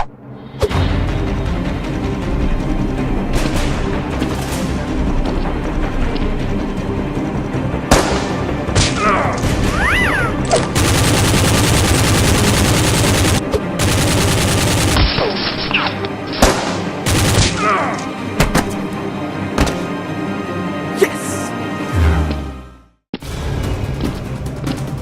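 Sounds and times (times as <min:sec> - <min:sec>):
background music: 0:00.0 - 0:25.0
gunshots: 0:07.9 - 0:09.0, 0:10.6 - 0:15.4, 0:16.3 - 0:17.7
rapid gunfire burst: 0:10.7 - 0:15.1, 0:17.0 - 0:17.6.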